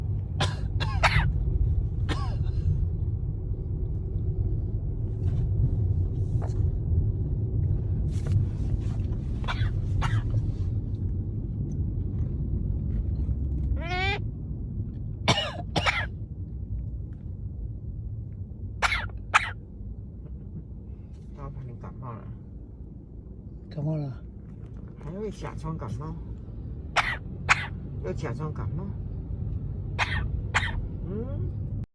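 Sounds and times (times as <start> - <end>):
low rumble: 0.0 - 31.9
person fake coughing: 0.4 - 1.3, 2.1 - 2.7, 9.4 - 10.3, 15.3 - 16.1, 18.8 - 19.5, 30.0 - 30.8.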